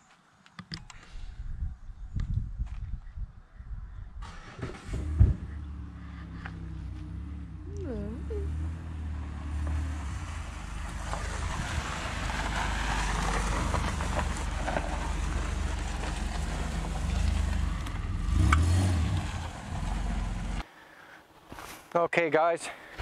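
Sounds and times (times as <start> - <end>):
road and wind noise: 0.0 - 20.7
car engine rumble: 3.6 - 20.7.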